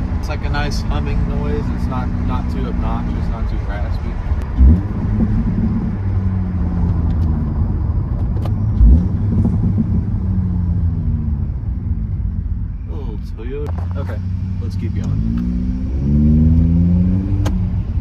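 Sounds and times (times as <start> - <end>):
car engine droning: 0.0 - 18.0.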